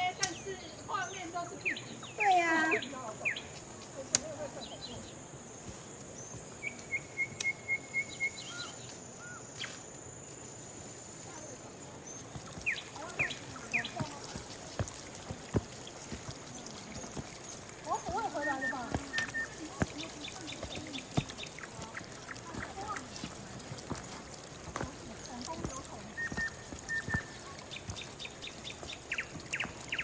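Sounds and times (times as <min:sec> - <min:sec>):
high insect drone: 0:00.0 - 0:26.4
forest birds chirping: 0:00.0 - 0:30.0
sharp clicks: 0:07.3 - 0:07.7.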